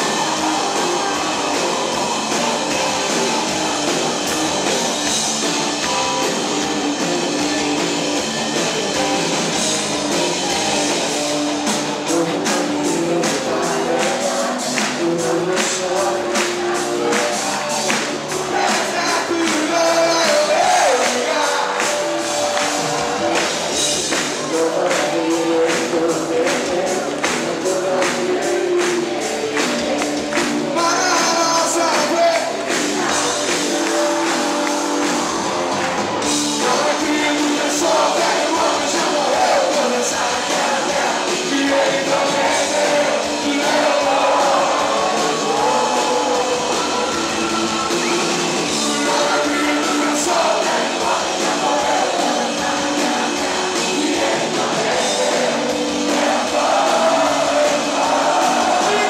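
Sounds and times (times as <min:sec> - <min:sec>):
drums and cymbals beat: 0:00.0 - 0:59.0
live rock band playing: 0:00.0 - 0:59.0
person singing: 0:11.7 - 0:35.7, 0:36.3 - 0:59.0.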